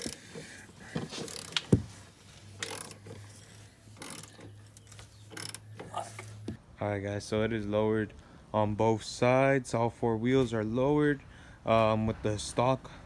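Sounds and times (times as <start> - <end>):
ratchet turning a bolt: 0.0 - 1.8, 2.5 - 6.3
hand tools clicking and knocking: 0.0 - 6.6.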